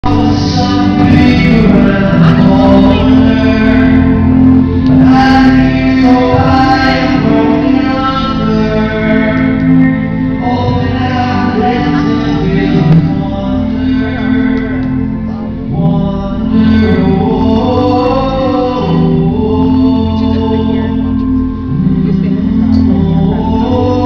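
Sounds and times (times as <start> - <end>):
guitar: 0.0 - 24.0
low bass: 0.0 - 24.0
man singing: 0.0 - 24.0.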